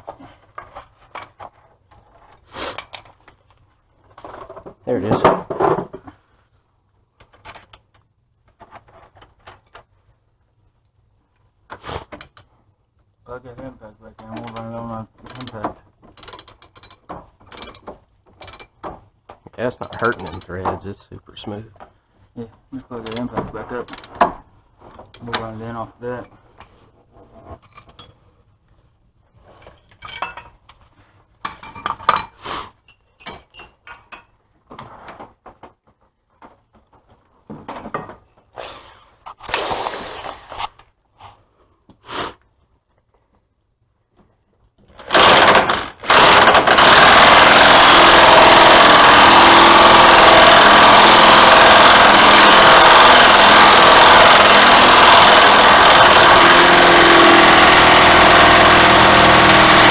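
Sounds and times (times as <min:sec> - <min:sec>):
tools knocking and clicking: 0:07.2 - 0:09.8, 0:14.2 - 0:19.1, 0:19.8 - 0:20.8, 0:23.0 - 0:24.4
electric impact wrench hammering: 0:45.0 - 0:59.9.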